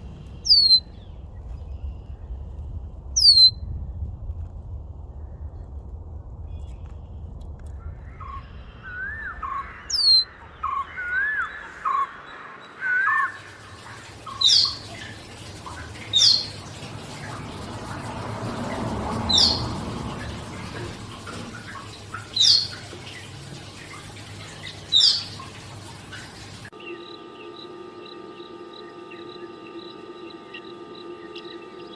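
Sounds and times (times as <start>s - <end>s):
short looping bird chirps: 0.4s - 0.9s, 3.2s - 3.6s, 9.1s - 13.4s, 26.8s - 31.9s
sharp downward bird calls: 0.4s - 1.0s, 3.2s - 3.6s, 8.1s - 13.6s.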